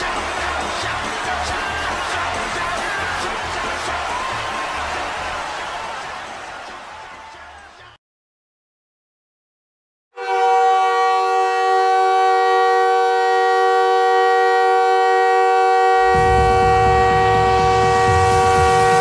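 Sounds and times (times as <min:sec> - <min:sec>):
arena goal horn blasting: 0:10.2 - 0:19.0.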